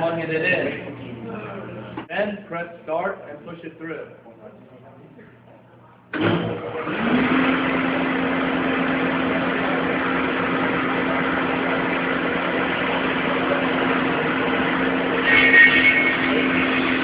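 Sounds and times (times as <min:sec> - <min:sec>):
planer cutterhead whirring: 0:06.1 - 0:17.0
wood planer motor running: 0:06.1 - 0:17.0.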